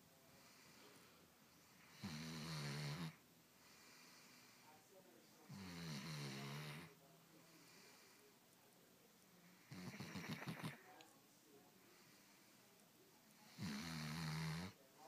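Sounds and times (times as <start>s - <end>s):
faint breaths: 0.0s - 15.0s
dog snoring: 1.8s - 4.4s, 5.5s - 7.0s, 9.7s - 10.8s, 13.5s - 14.8s.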